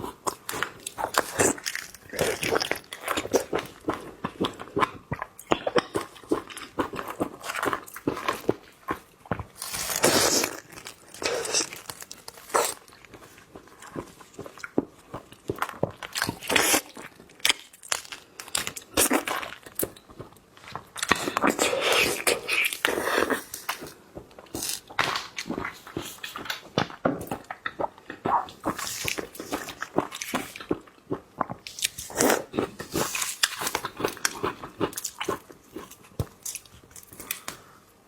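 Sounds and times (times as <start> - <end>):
chewing shrimp: 0.0 - 37.6.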